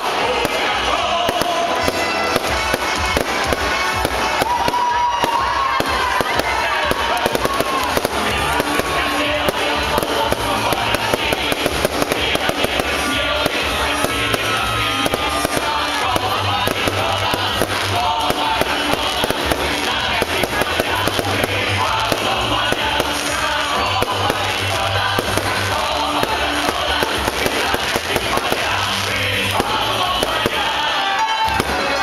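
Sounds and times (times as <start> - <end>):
bonfire crackling and popping: 0.0 - 32.0
music with repeating bass line: 5.5 - 30.8.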